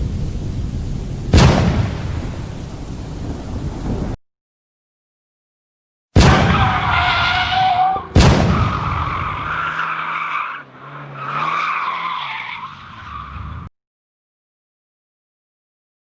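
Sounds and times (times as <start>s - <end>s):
tyre squeal: 6.5s - 13.4s
race car engine: 7.0s - 13.7s.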